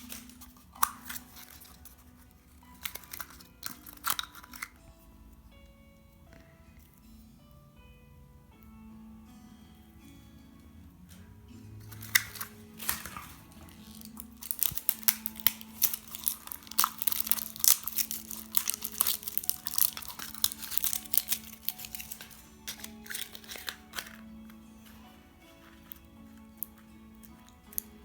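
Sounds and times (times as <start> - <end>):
wrapper crinkling and tearing: 0.0 - 4.8, 11.9 - 28.0
soft background music: 0.0 - 28.0.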